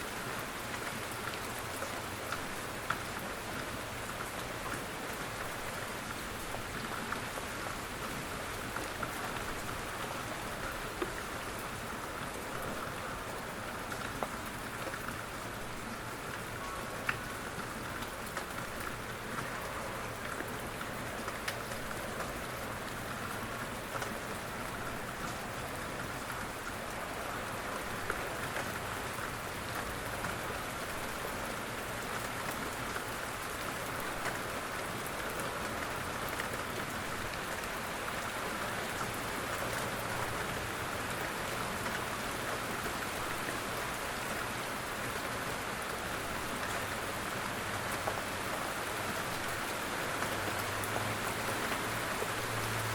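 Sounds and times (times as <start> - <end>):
rain falling: 0.0 - 52.9
raindrop ticks: 0.7 - 3.3, 8.6 - 15.2, 16.3 - 27.1, 31.5 - 43.0.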